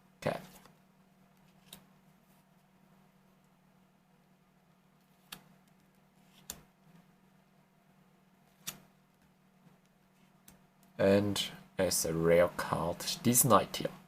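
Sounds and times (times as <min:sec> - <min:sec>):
faint steady hum: 0:00.0 - 0:14.0
trading cards clicking: 0:08.6 - 0:08.8.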